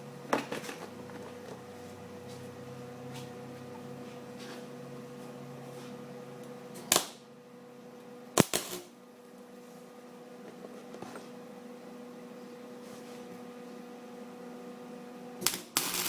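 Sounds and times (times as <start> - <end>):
arc welder humming: 0.0 - 7.4, 8.3 - 9.1, 15.4 - 16.0
welding arc crackle: 6.9 - 7.2, 8.4 - 9.0, 15.4 - 16.0.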